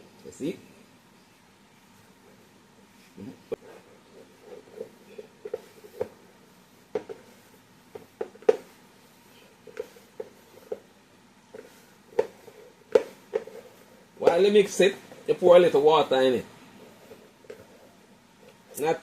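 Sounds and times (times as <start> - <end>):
hands kneading dough in a bowl: 1.9 - 19.0.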